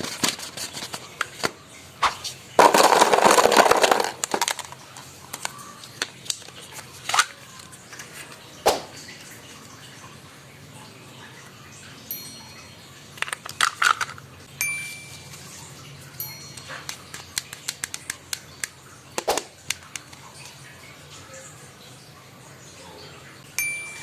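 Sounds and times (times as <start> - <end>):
small hard toys clicking: 2.6 - 8.2, 13.2 - 14.2, 16.2 - 20.6.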